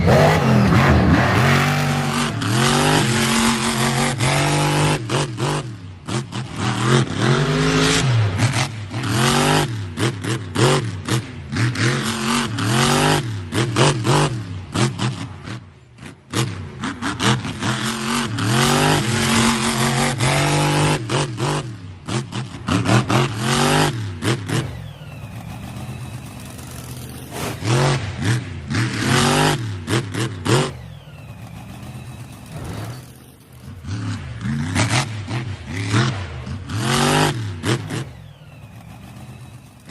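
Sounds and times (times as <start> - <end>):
toy truck motor revving: 24.4 - 27.9, 30.4 - 33.8, 37.8 - 39.9
toy truck clattering: 31.1 - 33.8.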